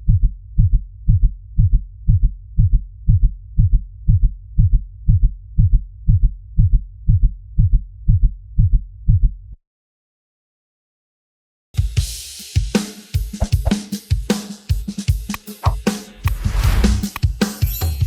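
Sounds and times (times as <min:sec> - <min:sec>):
heartbeat thumps: 0:13.4 - 0:13.8.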